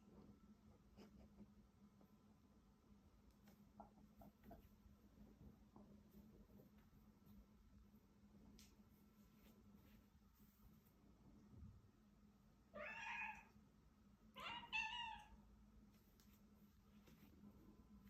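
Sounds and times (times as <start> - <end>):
cat meowing: 12.7 - 13.6, 14.4 - 15.4.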